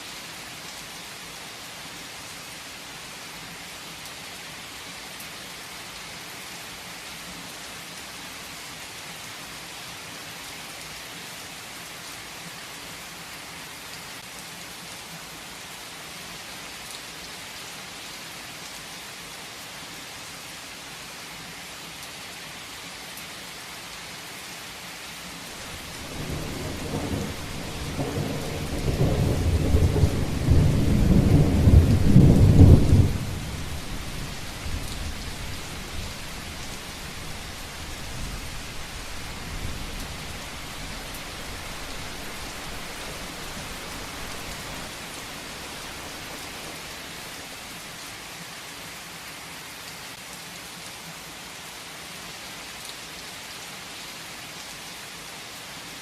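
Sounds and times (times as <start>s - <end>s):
heavy rain hissing: 25.5s - 48.0s
thunder rumbling: 25.6s - 47.3s.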